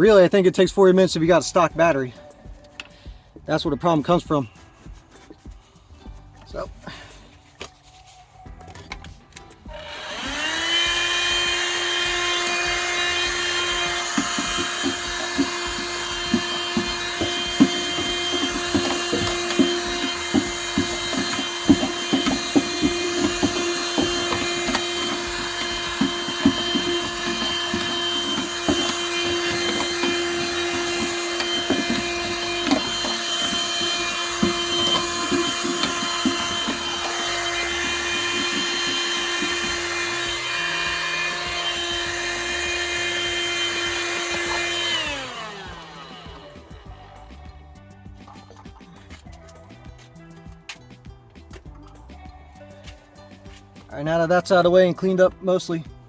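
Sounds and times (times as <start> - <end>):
small electric motor running: 9.7 - 46.9
clicks and scraping: 13.2 - 46.2.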